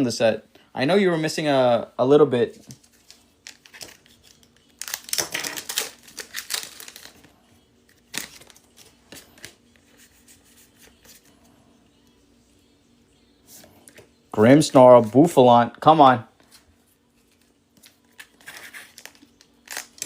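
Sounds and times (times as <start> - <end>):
foil wrappers crinkling and tearing: 2.8 - 9.6, 17.3 - 20.0.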